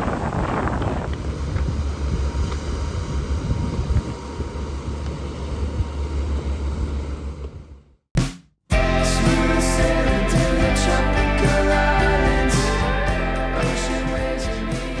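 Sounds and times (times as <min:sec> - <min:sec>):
wind noise on microphone: 0:00.0 - 0:04.8
steady low droning: 0:08.7 - 0:15.0.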